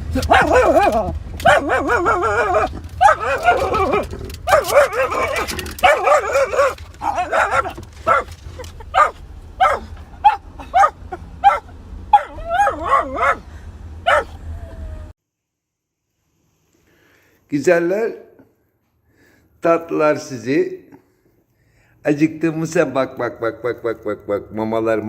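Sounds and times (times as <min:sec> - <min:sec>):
dog yelping and barking: 0:00.0 - 0:15.1
dog whining and howling: 0:00.1 - 0:15.2.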